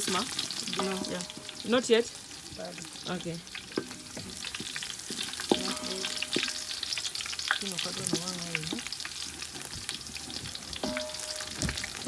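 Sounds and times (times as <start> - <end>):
onions sizzling in oil: 0.0 - 12.0
wooden stick stirring: 3.6 - 11.8.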